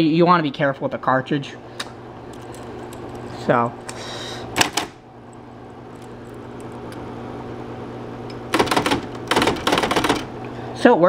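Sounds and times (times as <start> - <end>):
typewriter motor humming: 8.5 - 10.3.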